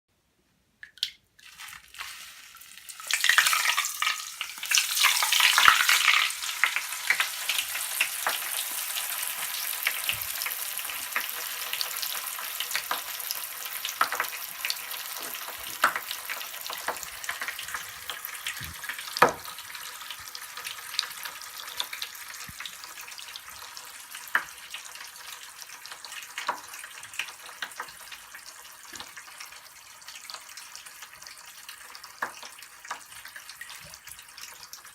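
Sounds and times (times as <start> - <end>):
bath crackles fizzing in water: 0.9 - 13.3.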